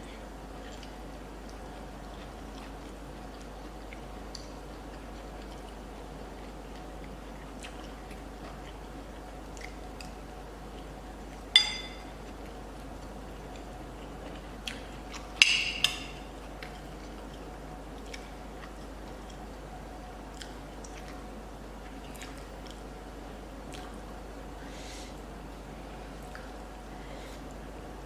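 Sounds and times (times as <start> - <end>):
utensil clinking against dish: 11.6 - 12.1, 15.4 - 16.2
quiet eating mouth clicks: 20.3 - 21.2.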